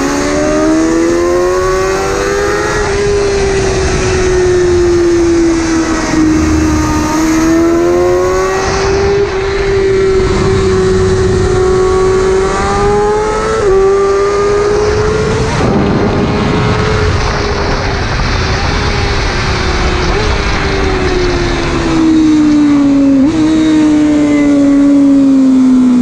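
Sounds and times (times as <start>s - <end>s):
motorcycle engine at high revs: 0.0s - 26.0s
wind rush over microphone: 2.4s - 22.4s.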